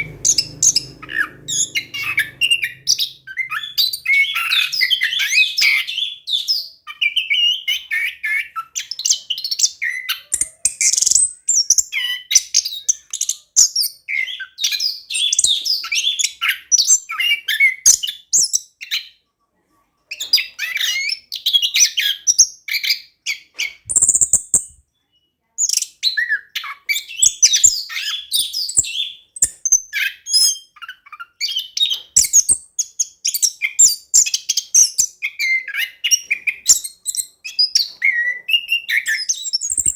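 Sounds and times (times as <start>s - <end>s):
thrush singing: 0.0s - 5.0s.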